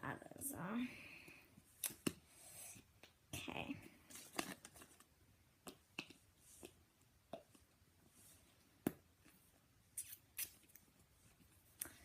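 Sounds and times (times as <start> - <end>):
faint clicks and taps: 5.6 - 7.8.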